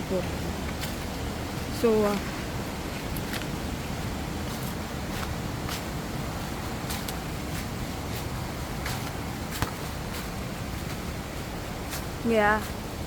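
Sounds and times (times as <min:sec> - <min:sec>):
footsteps through undergrowth: 0:04.4 - 0:12.9.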